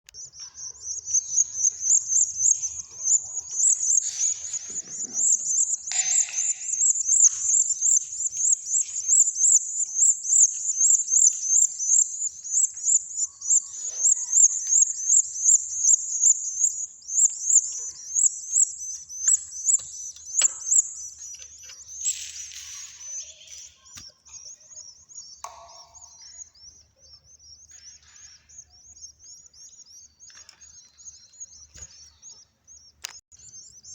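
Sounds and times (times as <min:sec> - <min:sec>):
young birds chirping rapidly: 0:00.1 - 0:33.9.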